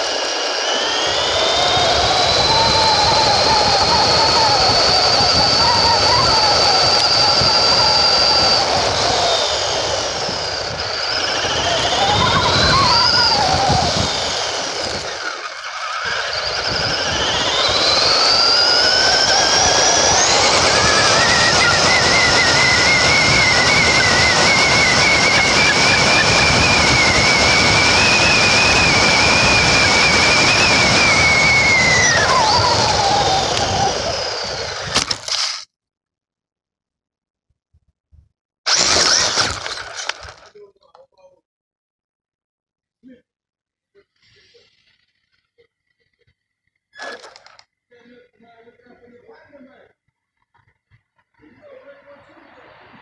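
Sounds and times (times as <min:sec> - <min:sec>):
rc car electric motor whining: 0:00.0 - 0:35.7, 0:38.7 - 0:40.6, 0:46.7 - 0:47.7.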